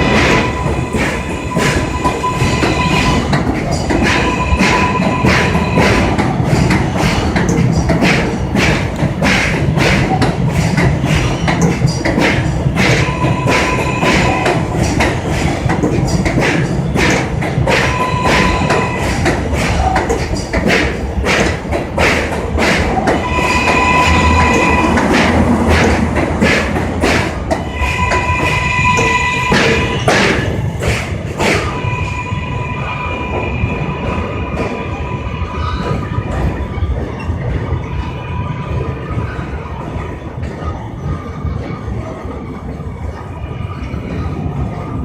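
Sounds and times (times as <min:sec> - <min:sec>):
high ringing squeal: 0:00.0 - 0:06.2, 0:23.2 - 0:25.0, 0:27.6 - 0:30.1, 0:31.6 - 0:35.8
subway train rumble: 0:00.0 - 0:45.0.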